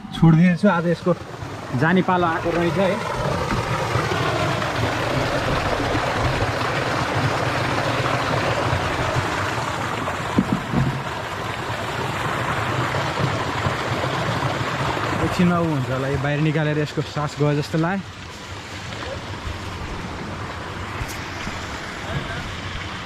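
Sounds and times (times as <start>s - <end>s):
running water: 0.0s - 23.0s
soft knocks: 10.3s - 11.1s.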